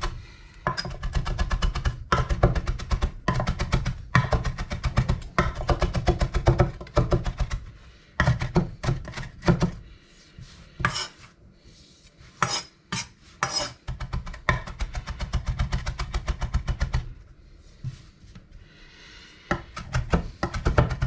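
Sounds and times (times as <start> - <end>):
knife chopping on cutting board: 0.7 - 7.6, 19.5 - 21.0.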